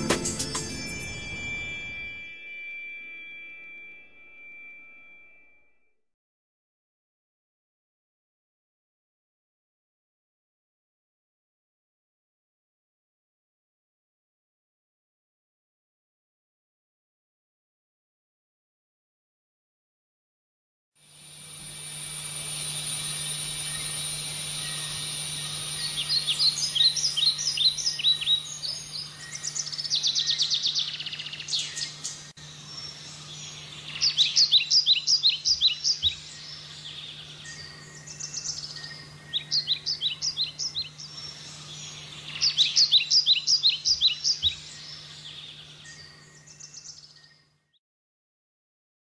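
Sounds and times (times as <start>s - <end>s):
low steady hum: 0.0s - 5.6s, 21.2s - 46.6s
high-pitched whine: 0.0s - 5.8s, 21.0s - 29.5s
bird singing: 21.6s - 47.8s.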